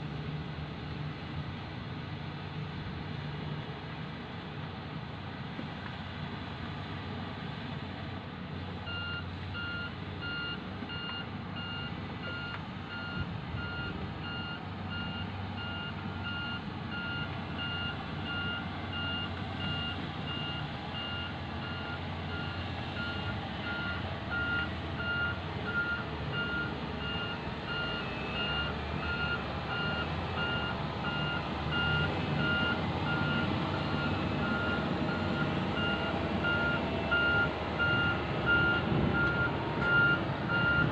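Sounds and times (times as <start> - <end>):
diesel engine rumble: 0.0 - 40.9
reversing alarm beeping: 8.9 - 40.9.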